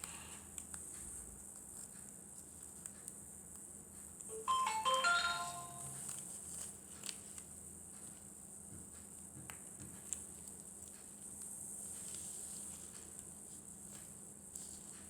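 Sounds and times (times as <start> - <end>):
chime-like jingle: 4.3 - 6.1.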